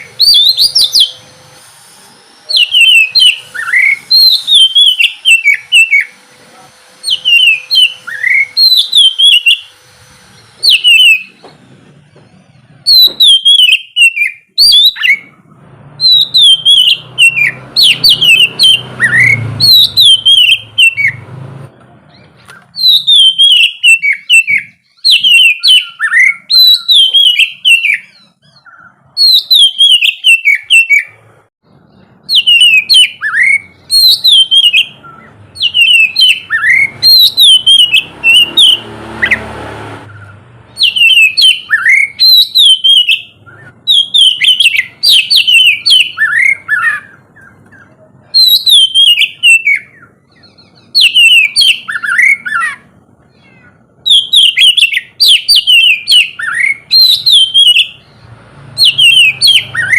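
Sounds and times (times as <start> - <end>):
bird singing whistled phrases: 0.0 - 1.2, 2.4 - 6.2, 7.0 - 9.8, 10.6 - 11.4, 12.8 - 15.3, 16.0 - 21.2, 22.2 - 31.2, 32.2 - 39.4, 40.1 - 58.1, 58.8 - 59.9.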